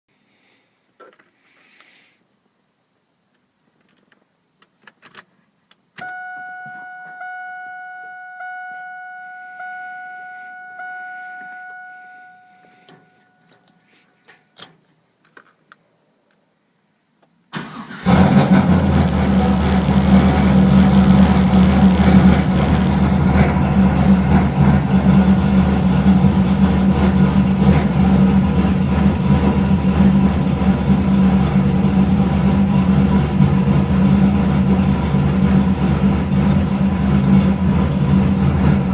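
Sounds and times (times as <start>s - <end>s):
warning chime pulses: 6.0s - 13.8s
engine starting and idling: 17.5s - 38.9s.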